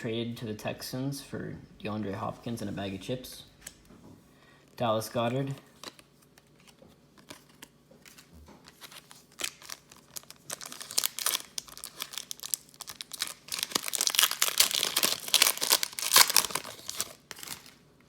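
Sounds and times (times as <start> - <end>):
plastic wrapper crinkling: 5.8 - 17.8.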